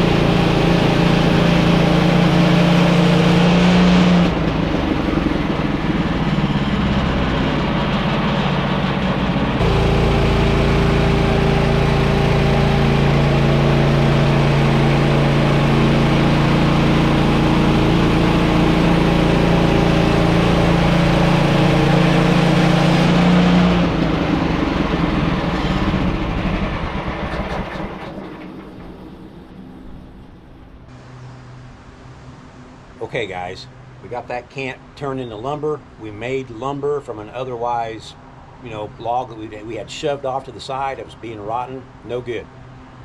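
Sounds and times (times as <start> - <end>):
sawmill gas engine running: 0.0 - 32.0.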